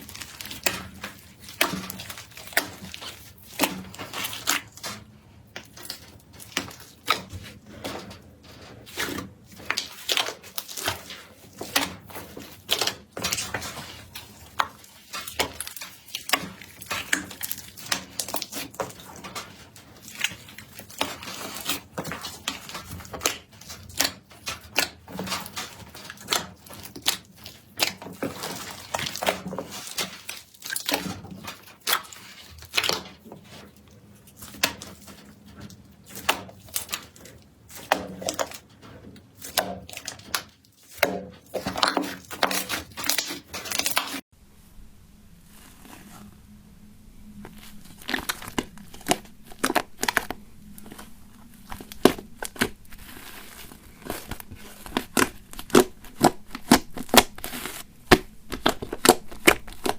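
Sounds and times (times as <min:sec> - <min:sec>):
slime crackling and popping: 0:47.4 - 0:59.9.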